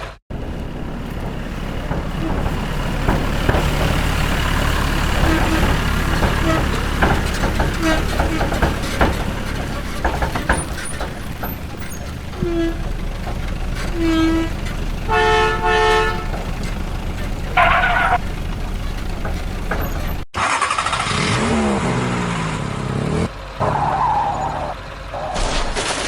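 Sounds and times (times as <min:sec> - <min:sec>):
vehicle engine rumbling: 0:00.0 - 0:26.0
short horn toots: 0:13.9 - 0:16.5.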